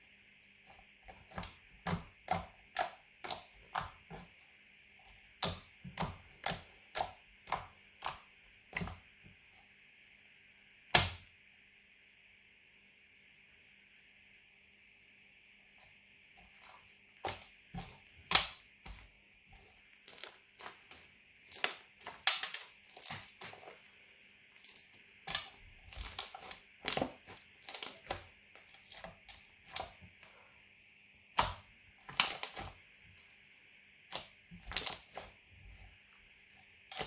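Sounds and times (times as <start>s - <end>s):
slime popping and crackling: 20.0s - 23.8s, 24.6s - 30.0s, 31.3s - 32.8s, 34.0s - 35.4s.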